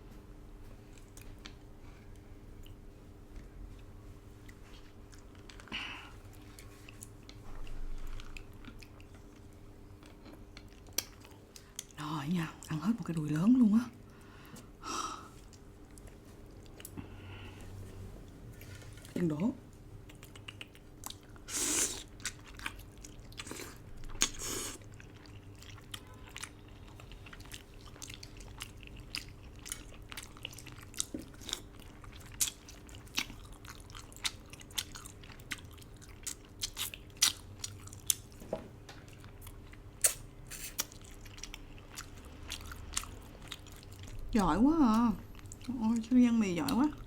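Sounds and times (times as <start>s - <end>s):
wet chewing mouth clicks: 20.1s - 21.2s, 40.0s - 43.1s.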